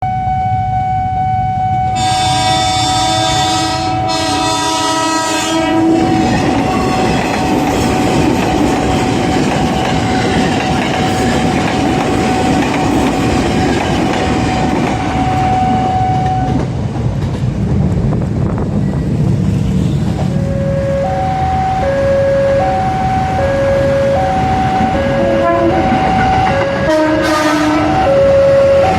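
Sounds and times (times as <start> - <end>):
train horn chord: 0.4 - 7.0, 20.5 - 28.9
train wheel clatter and rushing: 5.9 - 20.4
steady high tone: 20.3 - 27.2.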